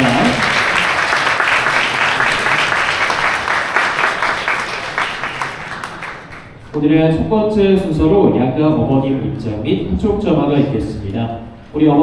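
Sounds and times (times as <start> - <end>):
people clapping in a hall: 0.0 - 6.9.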